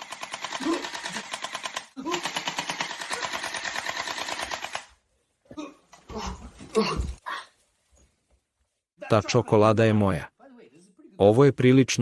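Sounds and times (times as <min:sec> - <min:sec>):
toy blaster firing rapid bursts: 0:00.0 - 0:04.9.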